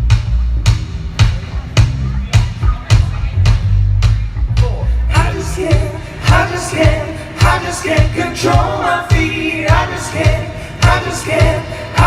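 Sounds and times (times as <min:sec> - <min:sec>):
kick drum beat: 0:00.0 - 0:11.6
live band playing: 0:00.0 - 0:12.0.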